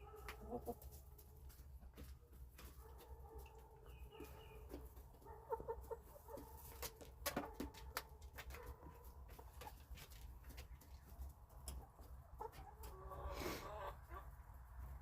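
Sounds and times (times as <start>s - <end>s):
chickens clucking softly: 0.1s - 15.0s.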